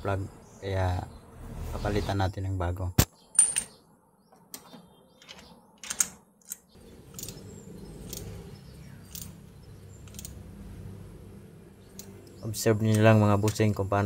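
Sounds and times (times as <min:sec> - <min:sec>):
steady low hum: 0:06.8 - 0:14.0
metallic clicks of hand tools: 0:09.1 - 0:09.4, 0:10.0 - 0:10.4.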